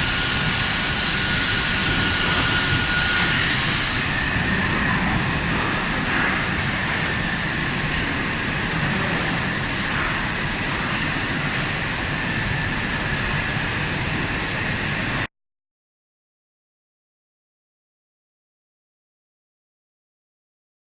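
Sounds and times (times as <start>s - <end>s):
machine running with high whine: 0.0s - 15.3s.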